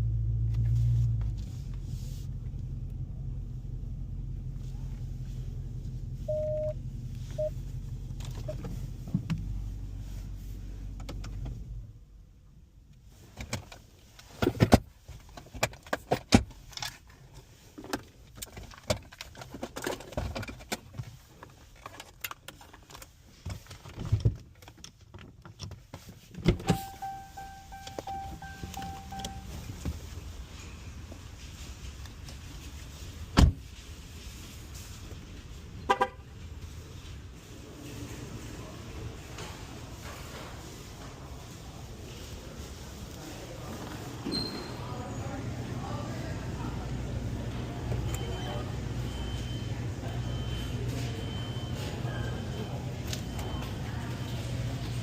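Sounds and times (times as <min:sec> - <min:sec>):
car engine humming: 0:26.4 - 0:36.2.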